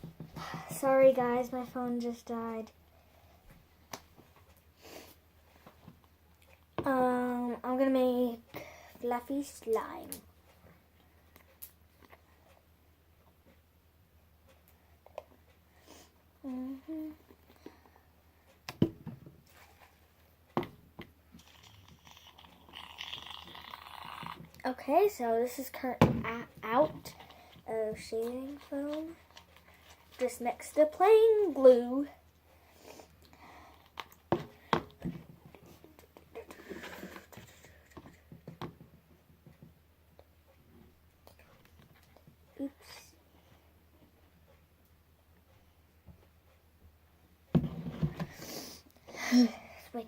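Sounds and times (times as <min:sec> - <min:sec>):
person humming: 0:16.4 - 0:17.2.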